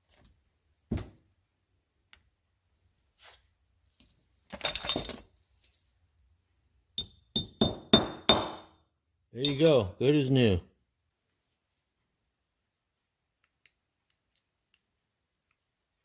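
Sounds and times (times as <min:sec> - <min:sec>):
hammer tapping metal: 0:07.0 - 0:08.7.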